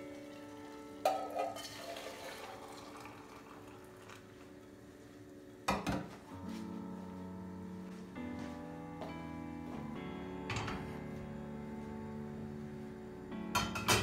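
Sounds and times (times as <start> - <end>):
running water: 0.0 - 4.6
soft background music: 0.0 - 14.0
dishes clinking: 1.0 - 2.8, 13.5 - 14.0.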